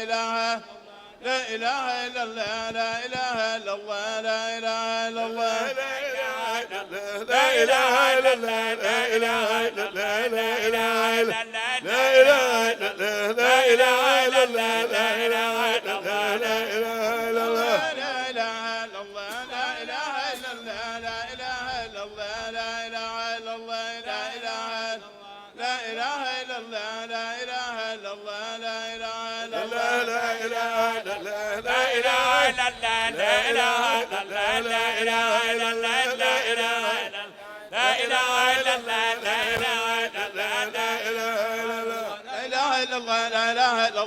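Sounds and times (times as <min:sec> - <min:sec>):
voices chanting: 0:05.3 - 0:23.0, 0:29.4 - 0:42.8.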